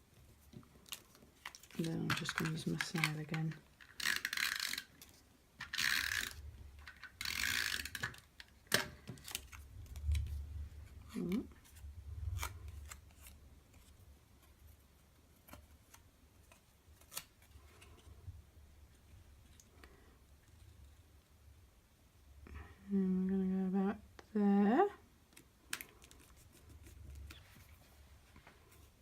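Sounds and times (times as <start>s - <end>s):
paper and card handling clicks: 0.8s - 5.1s.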